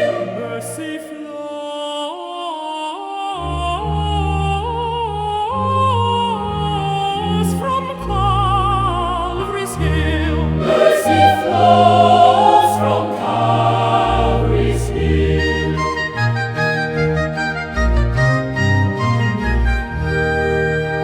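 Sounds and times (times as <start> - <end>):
choir singing a slow hymn: 0.0 - 1.7, 9.4 - 16.2.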